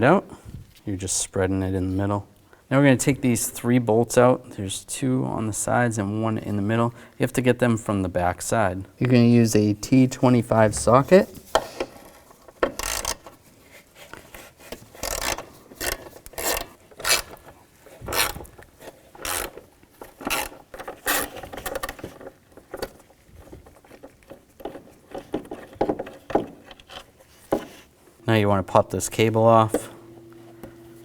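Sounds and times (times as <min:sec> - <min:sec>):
ratchet clicking: 0:12.8 - 0:13.3, 0:15.0 - 0:17.3, 0:19.2 - 0:19.6.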